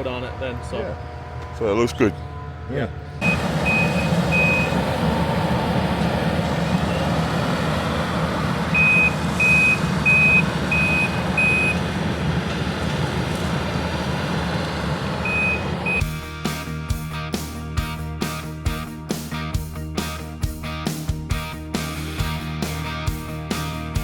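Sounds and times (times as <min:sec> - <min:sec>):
reversing alarm beeping: 0:00.0 - 0:12.7, 0:15.1 - 0:16.2
heavy machine engine running: 0:00.0 - 0:24.0.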